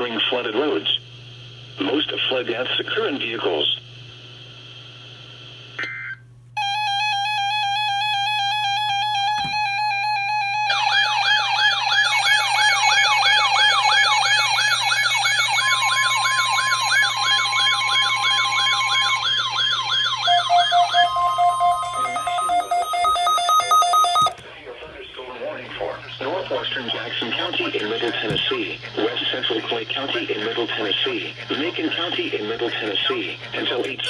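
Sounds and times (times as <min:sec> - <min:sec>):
yelping siren sweep: 0:06.6 - 0:24.3
pulsing electronic tones: 0:06.6 - 0:24.4
steady electronic tone: 0:06.6 - 0:26.4.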